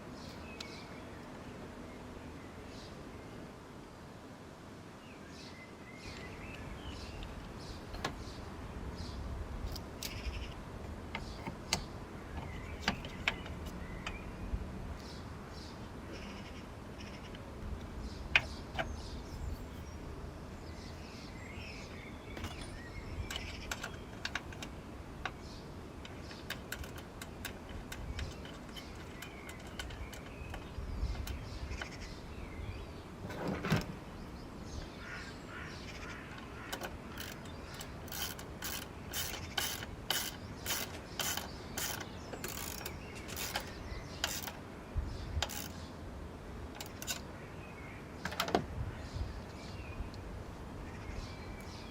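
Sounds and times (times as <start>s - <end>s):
ratchet clicking: 36.7s - 44.6s, 45.4s - 45.8s.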